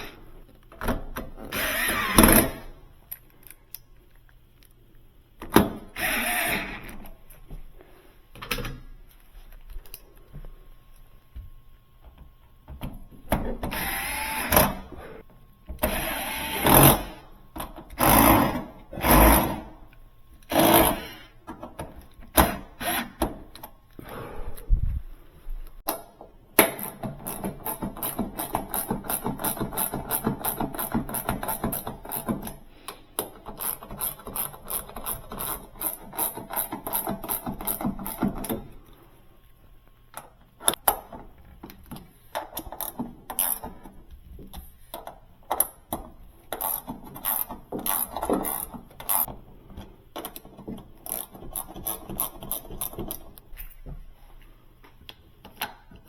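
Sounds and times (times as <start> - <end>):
power tool bursts: 1.5 - 2.6, 6.0 - 6.9.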